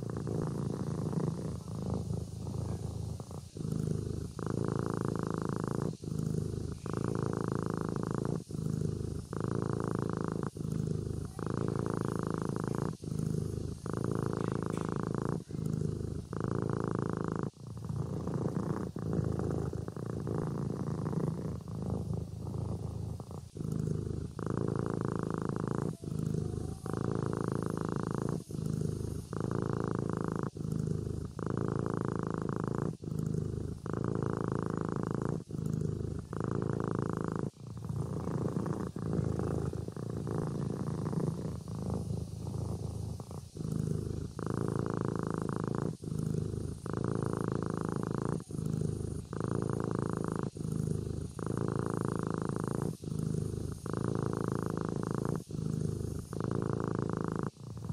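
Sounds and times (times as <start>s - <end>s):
kitten purring: 0.0s - 57.9s.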